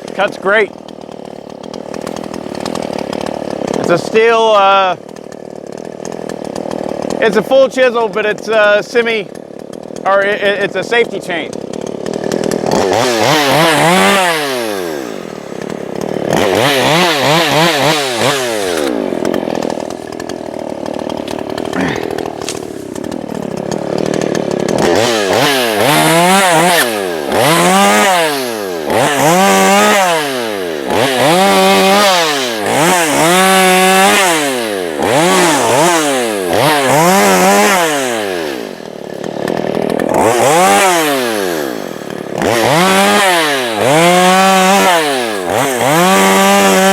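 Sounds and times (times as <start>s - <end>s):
chainsaw revving: 0.0s - 46.9s.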